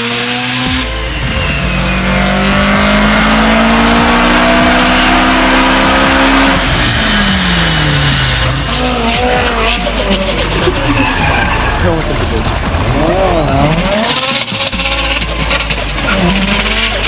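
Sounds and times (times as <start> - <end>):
car engine accelerating: 0.0 - 17.0.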